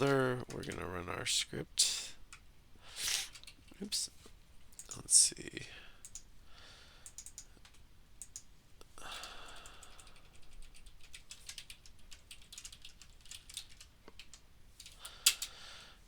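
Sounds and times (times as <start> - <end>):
keyboard typing clicks: 6.0 - 6.3, 7.0 - 8.5, 9.2 - 15.5.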